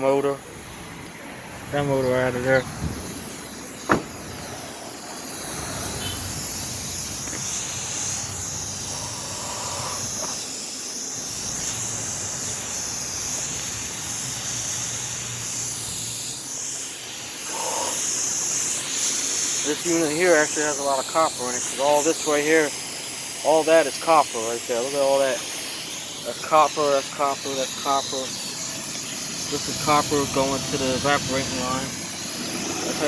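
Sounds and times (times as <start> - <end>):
refrigerant hissing: 0.0 - 33.0.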